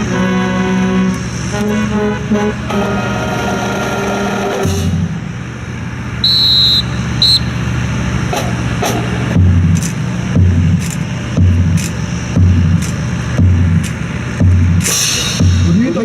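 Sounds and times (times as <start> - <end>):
steady low hum: 0.0 - 16.0
high whistle-like tone: 6.2 - 7.6
sharp clicks: 11.7 - 12.0
music over loudspeakers: 12.4 - 16.0.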